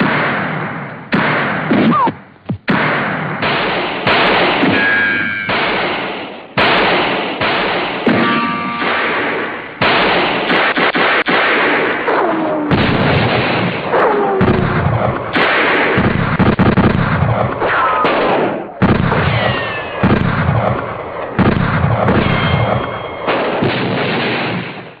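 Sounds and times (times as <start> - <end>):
explosions: 0.0 - 25.0
gunfire: 0.0 - 25.0
falling shell whistles: 4.7 - 5.7.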